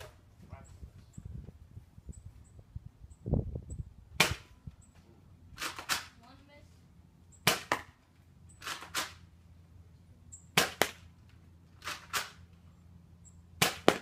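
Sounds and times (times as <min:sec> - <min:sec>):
toy blaster shots snapping: 0:05.6 - 0:06.1, 0:11.8 - 0:12.4.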